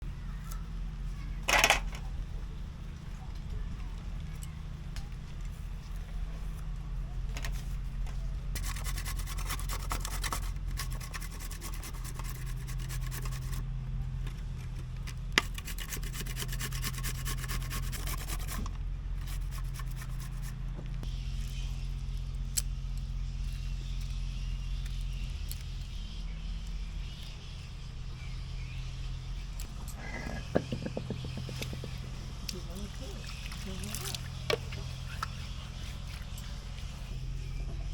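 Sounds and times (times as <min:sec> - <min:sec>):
steady low hum: 0:00.0 - 0:37.9
rapid scraping strokes: 0:08.6 - 0:13.6, 0:15.4 - 0:20.6.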